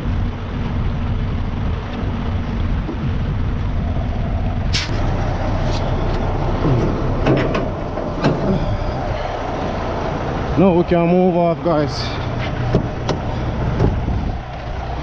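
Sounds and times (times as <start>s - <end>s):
diesel truck engine running: 0.0s - 15.0s
sharp clicks and knocks: 5.7s - 8.6s, 12.4s - 14.0s.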